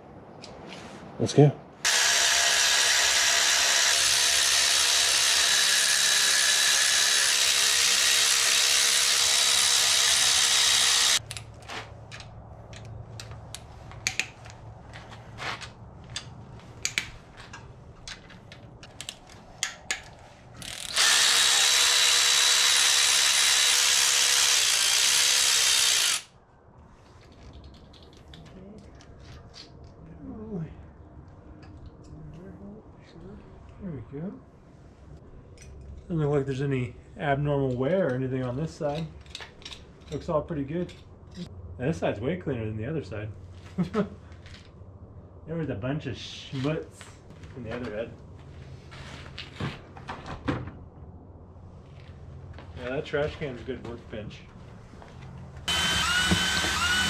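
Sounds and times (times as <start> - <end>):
power tool running: 1.8 - 11.2, 20.6 - 26.3, 55.7 - 57.0.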